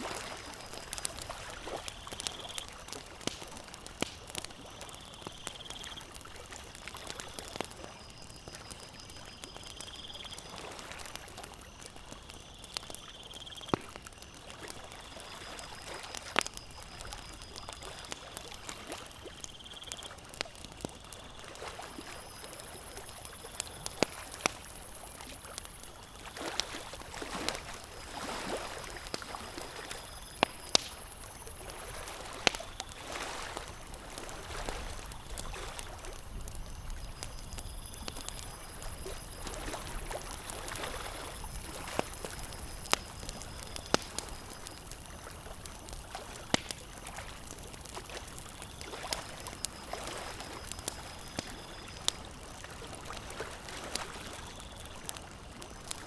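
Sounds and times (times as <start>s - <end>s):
lake waves lapping: 0.0s - 2.4s, 23.9s - 36.6s, 38.1s - 54.4s
campfire crackling and popping: 0.0s - 56.0s.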